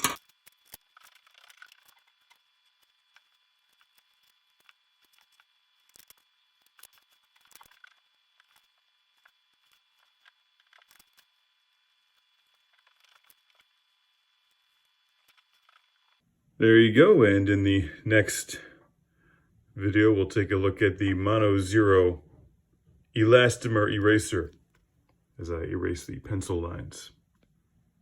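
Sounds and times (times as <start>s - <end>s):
faint high whine: 0.0s - 28.0s.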